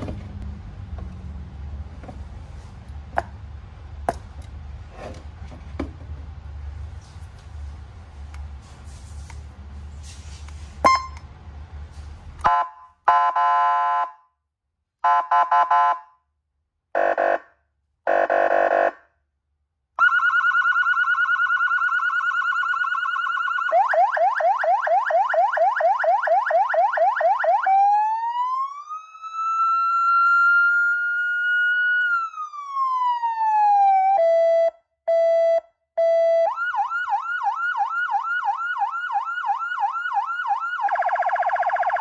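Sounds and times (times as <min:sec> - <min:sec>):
electronic siren cycling tones: 0:10.8 - 0:11.2, 0:20.0 - 0:42.0.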